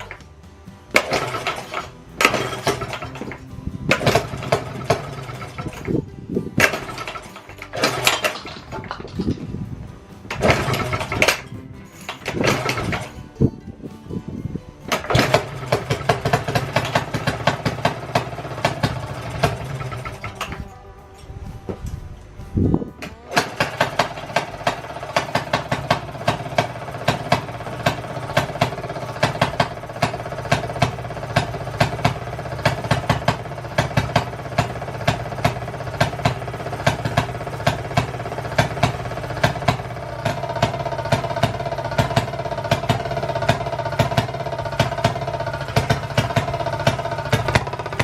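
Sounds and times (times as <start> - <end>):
spinning engine whir: 0.0 - 48.0
engine firing pops: 0.9 - 9.6, 10.2 - 13.2, 14.9 - 20.7, 21.5 - 48.0.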